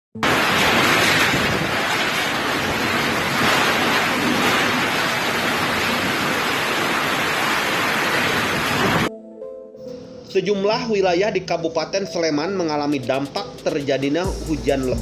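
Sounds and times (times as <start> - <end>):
heavy rain: 0.2 - 9.1
strong wind: 0.2 - 9.1.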